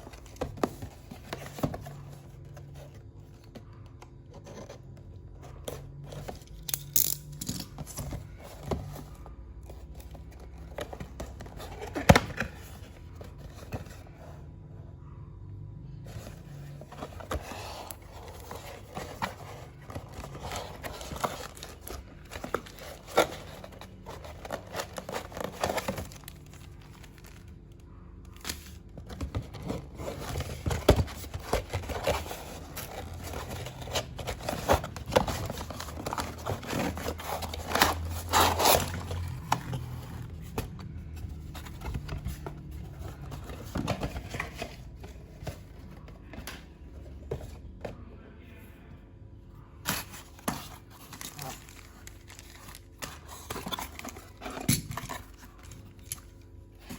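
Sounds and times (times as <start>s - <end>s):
plastic and cardboard rustling: 0.0s - 6.6s, 7.6s - 14.5s, 16.1s - 48.1s, 49.8s - 56.9s.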